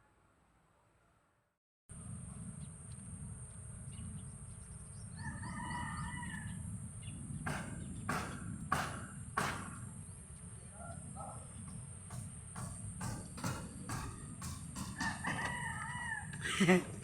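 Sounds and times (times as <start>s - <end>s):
rooster crowing: 5.1s - 6.7s, 14.8s - 16.8s
sharp knocks: 7.4s - 9.9s, 11.6s - 15.5s.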